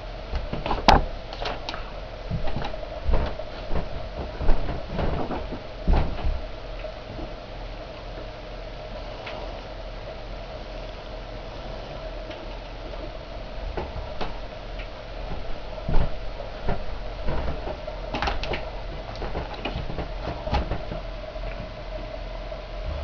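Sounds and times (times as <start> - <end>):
clicks and knocks of train: 0.3 - 7.4, 12.0 - 21.8.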